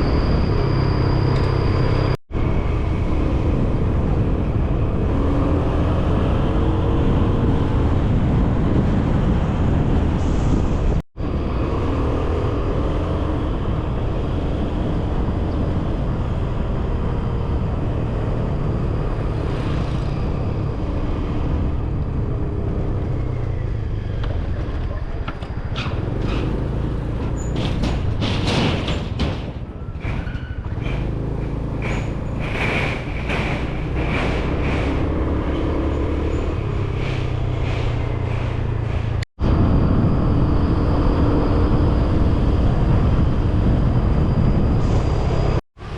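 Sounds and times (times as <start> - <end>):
wind on microphone: 2.4 - 12.2, 36.6 - 45.6.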